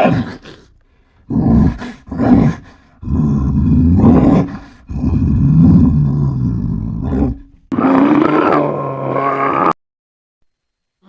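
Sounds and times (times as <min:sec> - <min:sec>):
animal growling roars: 0:01.3 - 0:09.8.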